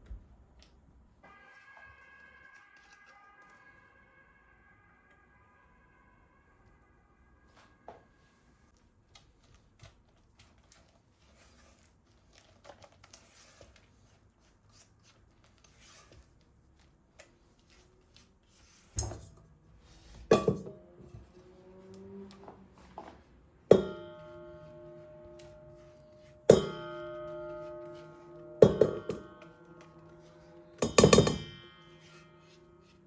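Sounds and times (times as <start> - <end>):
kitchenware clattering: 20.3 - 20.8, 23.7 - 32.6.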